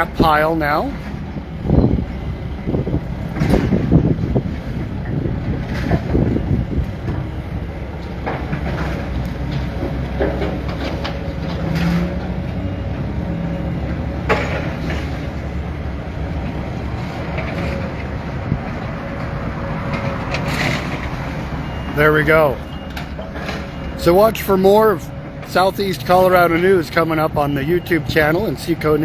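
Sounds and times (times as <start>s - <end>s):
demolition machine engine rumble: 0.0s - 29.0s.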